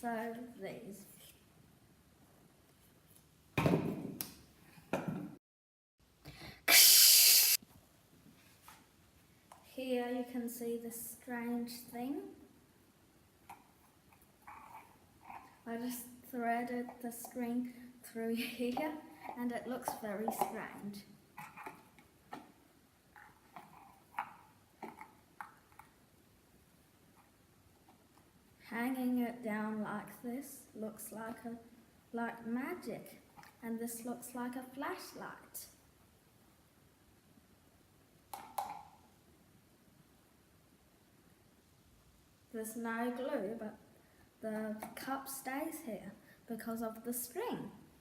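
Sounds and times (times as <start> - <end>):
loud hiss: 6.6 - 7.6
faint rustle-like noises: 7.6 - 10.0, 13.4 - 16.2, 19.0 - 26.1
plastic cup clicks and taps: 38.3 - 38.9.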